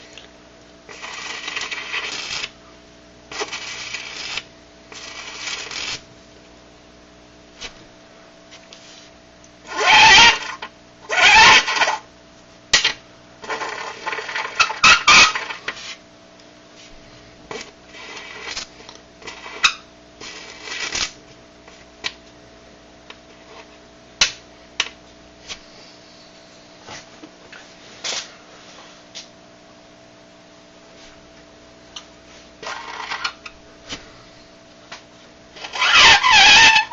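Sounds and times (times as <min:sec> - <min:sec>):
coin squealing on dry ice: 0:00.9 - 0:02.5, 0:09.7 - 0:12.0, 0:13.4 - 0:15.6, 0:19.3 - 0:20.9, 0:35.6 - 0:36.9.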